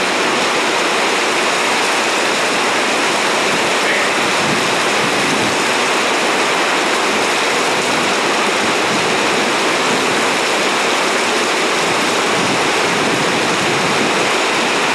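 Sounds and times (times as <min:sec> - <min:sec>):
heavy rain pouring: 0:00.0 - 0:14.9.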